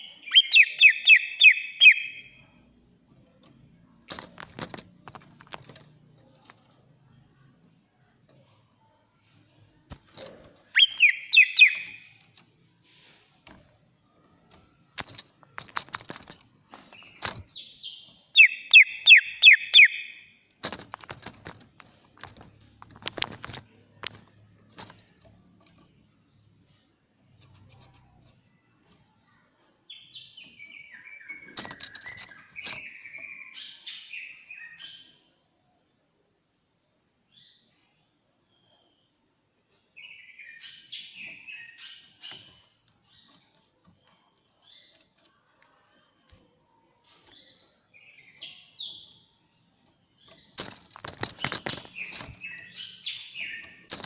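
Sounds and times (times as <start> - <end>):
sharp bird clicks: 0.0 - 2.2, 9.9 - 12.5, 18.4 - 25.9, 30.4 - 34.0, 49.8 - 54.0
bird singing shrill bursts: 0.0 - 2.3, 10.8 - 12.1, 18.4 - 20.2
bird chattering: 0.0 - 2.4, 10.7 - 12.3, 17.0 - 20.3.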